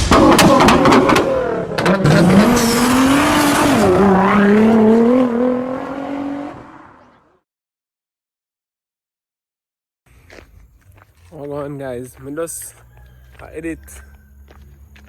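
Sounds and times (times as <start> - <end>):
car engine revving: 0.0 - 7.3.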